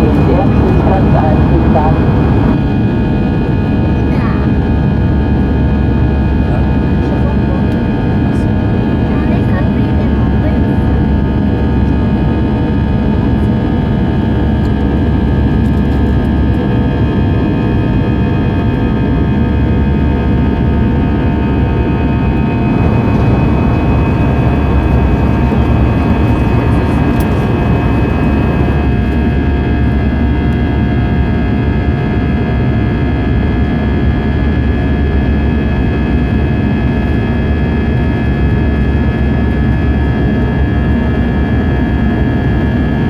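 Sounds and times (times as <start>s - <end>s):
engine whining tones: 0.0s - 2.7s, 21.3s - 29.3s
jet engine roar in cabin: 0.0s - 41.9s.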